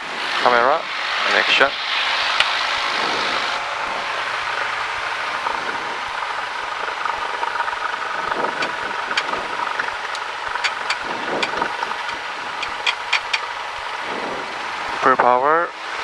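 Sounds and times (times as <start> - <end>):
aircraft piston engine running: 0.0 - 16.0
sharp clicks: 2.4 - 14.1.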